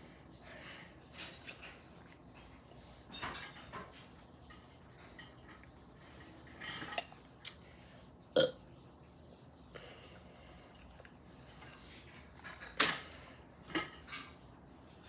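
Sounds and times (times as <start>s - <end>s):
person burping: 8.4s - 8.6s.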